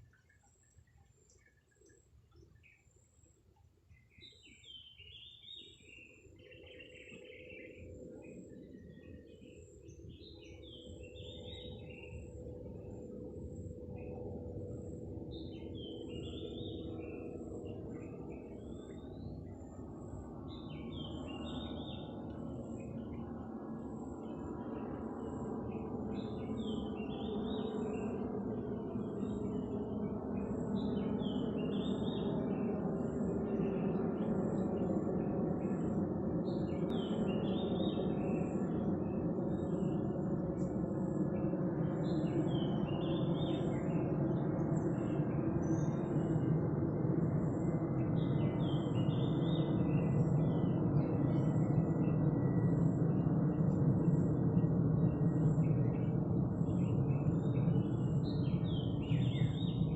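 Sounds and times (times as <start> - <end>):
bird chirps: 3.9 - 13.0, 15.3 - 23.4, 30.4 - 40.7, 47.4 - 59.9.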